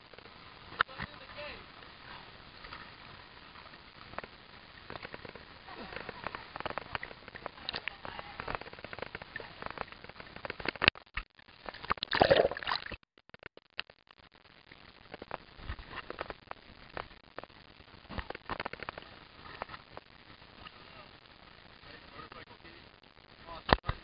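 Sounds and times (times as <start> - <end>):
water splashing and sloshing: 11.6 - 13.0.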